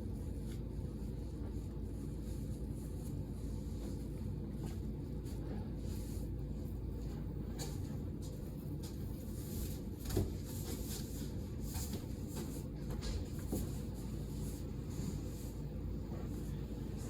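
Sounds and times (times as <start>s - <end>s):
steady low hum: 0.0s - 17.0s
handling rustles and knocks: 7.5s - 14.7s.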